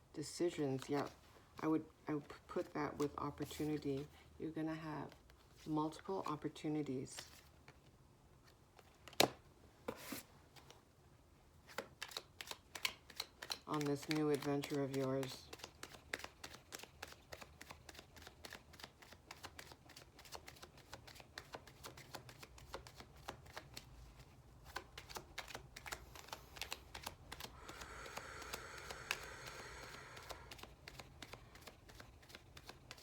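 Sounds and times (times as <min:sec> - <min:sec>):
cards being shuffled: 0:11.6 - 0:33.0.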